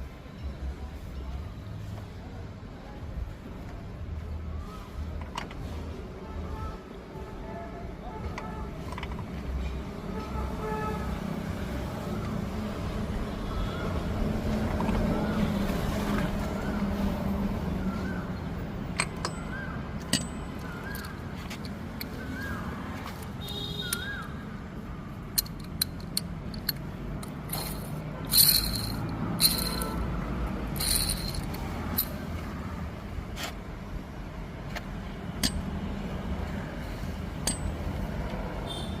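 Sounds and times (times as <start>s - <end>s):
sharp metallic clinks: 18.9s - 22.2s, 25.3s - 30.0s, 30.7s - 32.3s.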